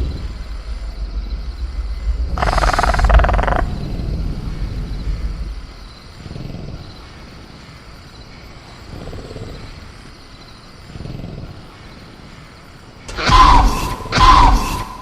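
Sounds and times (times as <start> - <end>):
low rumbling swells: 0.0 - 8.0
crickets chirring: 0.0 - 15.0.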